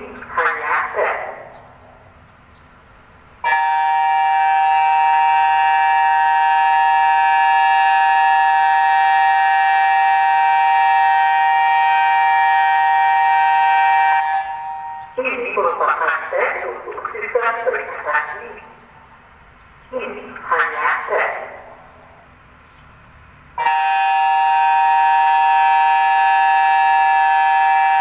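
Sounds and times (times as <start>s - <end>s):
warning siren steady tone: 3.4s - 19.3s, 23.5s - 28.0s.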